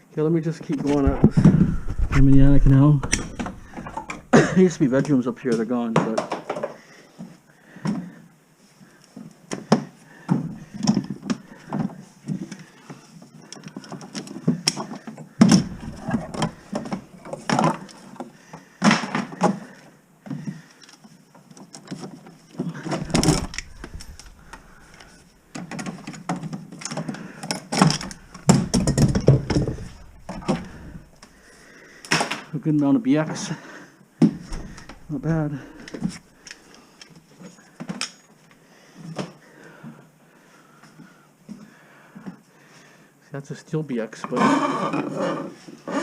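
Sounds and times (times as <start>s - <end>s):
heavy thumps: 0.9s - 5.0s, 15.4s - 17.1s, 22.8s - 26.2s, 27.8s - 31.5s, 34.2s - 36.2s
metal cable clattering: 0.9s - 5.0s, 15.4s - 17.4s, 22.8s - 31.6s.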